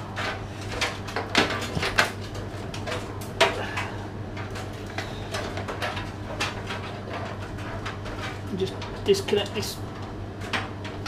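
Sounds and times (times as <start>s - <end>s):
steady low hum: 0.0s - 11.0s.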